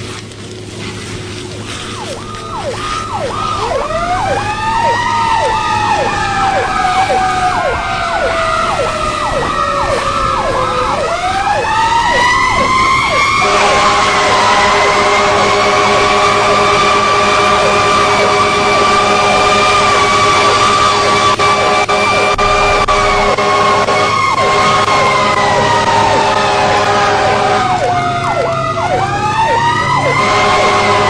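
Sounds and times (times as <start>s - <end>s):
engine hum: 0.0s - 31.0s
slow wailing siren: 1.1s - 31.0s
fast sweeping siren: 1.6s - 31.0s
multi-tone horn blast: 12.1s - 28.0s, 29.8s - 31.0s.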